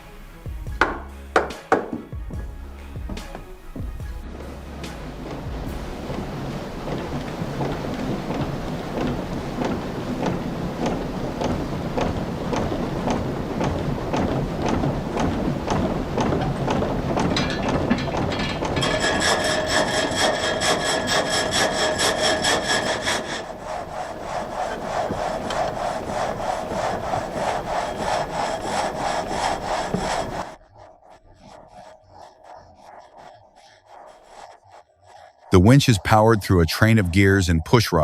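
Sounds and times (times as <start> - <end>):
frame saw cutting log: 3.1 - 30.6.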